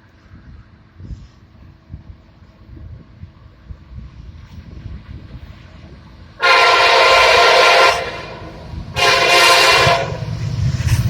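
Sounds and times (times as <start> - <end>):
train rumbling past: 0.0 - 11.0
locomotive air horn: 6.4 - 10.3.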